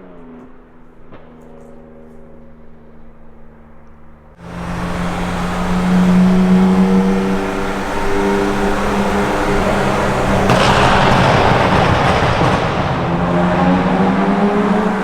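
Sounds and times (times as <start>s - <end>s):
car engine accelerating: 4.3s - 15.0s.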